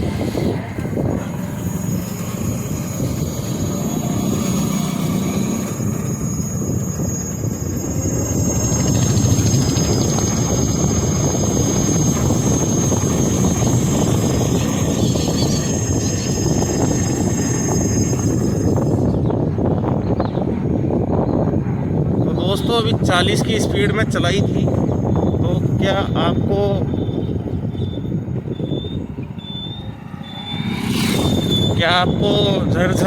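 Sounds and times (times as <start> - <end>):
wind and road rumble: 0.0 - 33.0
thin high whine: 24.4 - 32.6.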